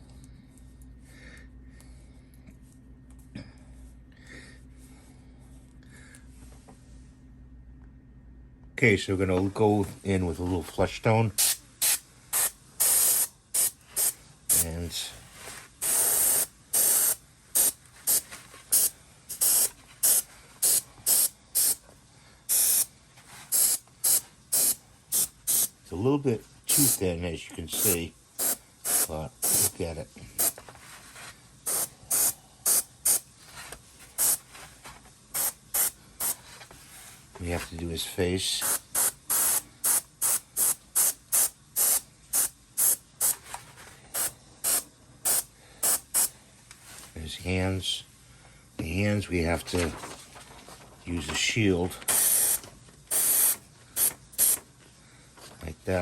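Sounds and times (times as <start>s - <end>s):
spray paint hissing bursts: 11.4s - 14.7s, 15.8s - 21.8s, 22.5s - 22.9s, 23.5s - 25.8s, 26.7s - 27.0s, 27.8s - 29.8s, 31.7s - 33.2s, 34.2s - 34.4s, 35.3s - 36.4s, 38.6s - 43.4s, 44.2s - 46.3s, 52.1s - 54.6s.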